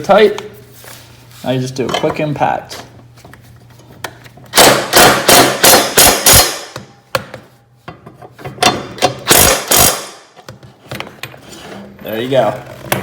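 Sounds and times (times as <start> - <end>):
impact driver hammering: 4.5 - 7.4, 8.6 - 10.4.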